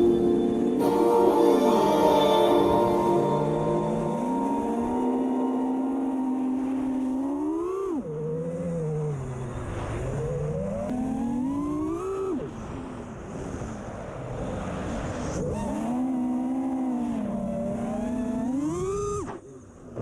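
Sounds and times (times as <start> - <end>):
drone motors whining: 0.0 - 13.0.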